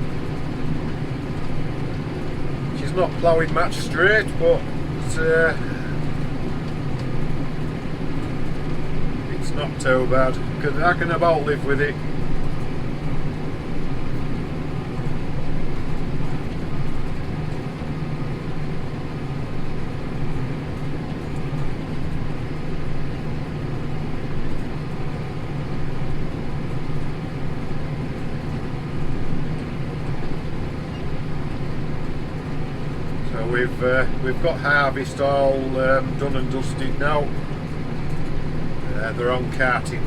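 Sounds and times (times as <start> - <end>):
tractor engine drone: 0.0 - 40.0.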